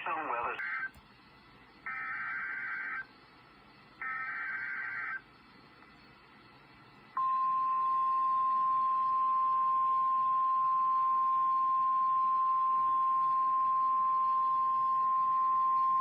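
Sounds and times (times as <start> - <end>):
faint radio hiss: 0.0 - 7.2
steady alarm tone: 4.0 - 5.2.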